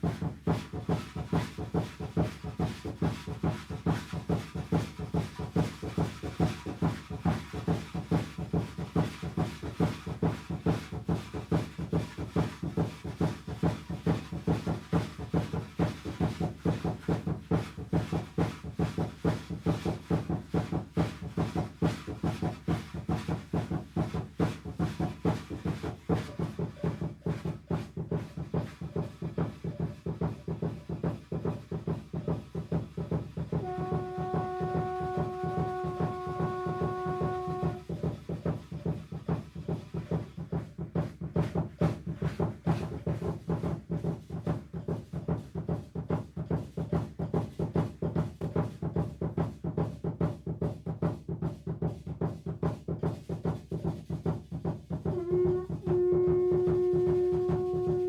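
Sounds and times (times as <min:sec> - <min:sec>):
fast drumming: 0:00.0 - 0:58.0
steady horn-like tone: 0:33.6 - 0:38.0, 0:55.1 - 0:58.0.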